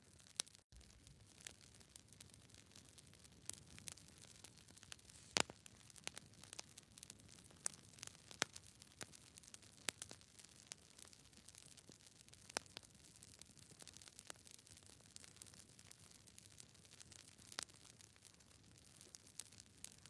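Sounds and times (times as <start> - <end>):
irregular clicks and crackles: 0.2 - 20.0
faint hiss: 5.0 - 5.6.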